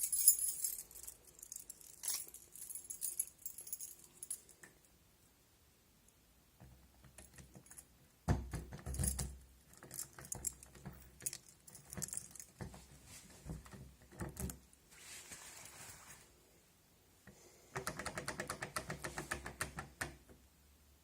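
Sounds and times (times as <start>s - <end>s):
keys jangling: 0.0s - 4.7s.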